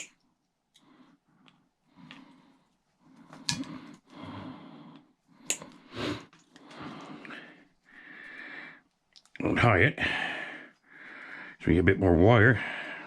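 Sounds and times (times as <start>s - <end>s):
sharp clicks and snaps: 0.0s - 2.3s, 3.2s - 4.0s, 4.9s - 7.3s, 8.8s - 9.4s.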